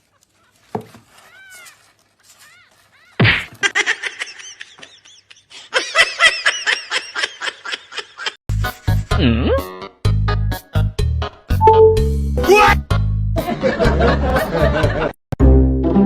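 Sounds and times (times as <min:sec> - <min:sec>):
person laughing in bursts: 0:03.2 - 0:08.4.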